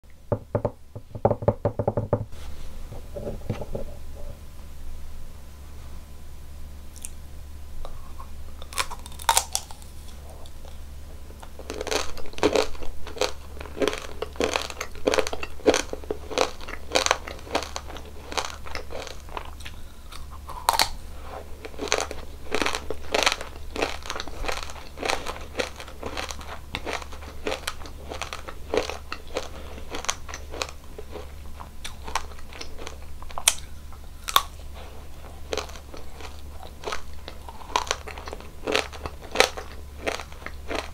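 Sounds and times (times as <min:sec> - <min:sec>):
crunching crispy ice cream: 0:08.6 - 0:40.9.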